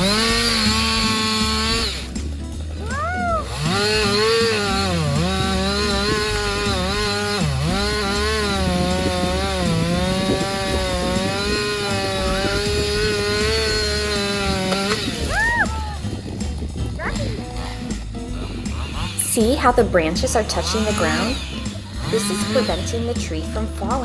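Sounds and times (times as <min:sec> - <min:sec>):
chainsaw cutting wood: 0:00.0 - 0:24.0.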